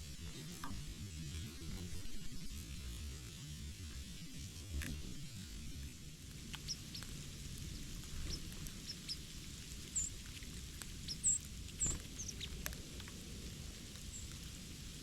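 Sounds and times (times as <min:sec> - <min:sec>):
small birds chirping: 0:04.9 - 0:15.0.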